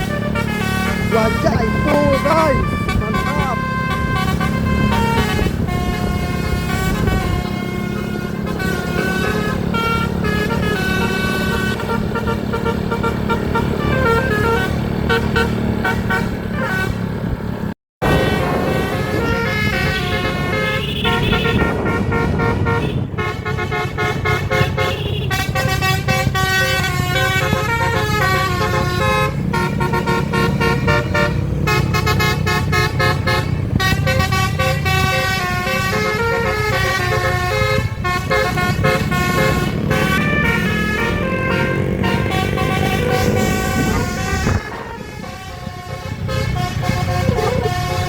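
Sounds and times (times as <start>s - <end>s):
bus musical horn: 0.0s - 17.4s, 18.0s - 48.0s
bus engine rumble: 0.0s - 48.0s.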